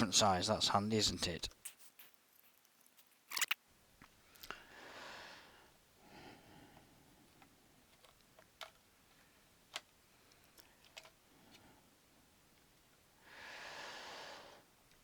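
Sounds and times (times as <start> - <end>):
small screws and tools clicking: 1.7 - 3.6
soft breaths: 4.1 - 8.0, 9.0 - 12.4, 13.1 - 15.0.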